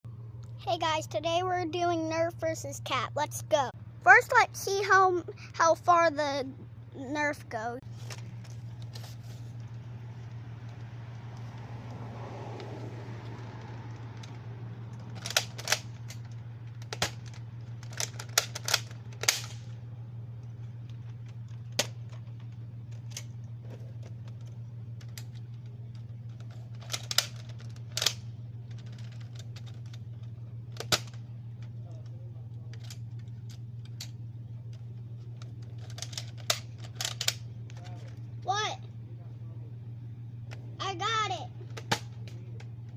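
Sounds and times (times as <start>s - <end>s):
steady low hum: 0.0s - 42.9s
toy blaster clicks and knocks: 15.0s - 19.7s.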